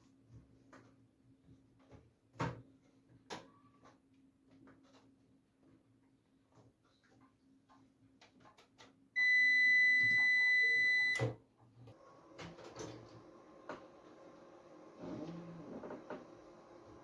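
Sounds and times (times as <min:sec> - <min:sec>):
computer beep: 0:09.2 - 0:11.2.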